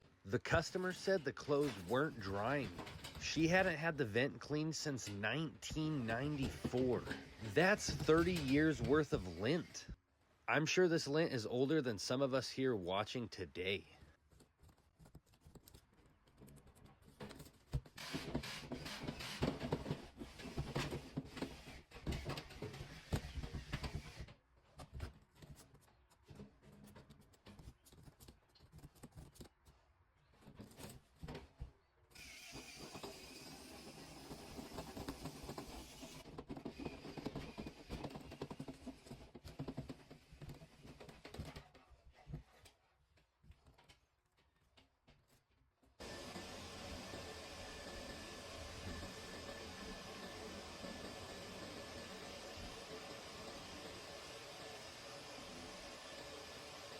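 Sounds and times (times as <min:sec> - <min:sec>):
lint scraping and rustling in duct: 0:00.4 - 0:10.0.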